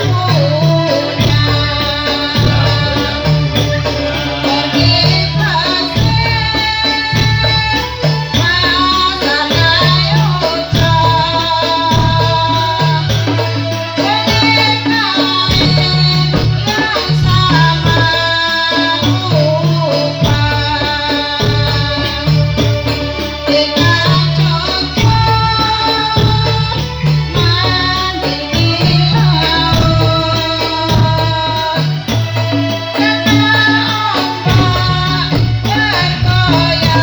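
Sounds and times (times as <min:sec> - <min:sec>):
person singing melody: 0:00.0 - 0:22.4
frame drums: 0:00.0 - 0:37.0.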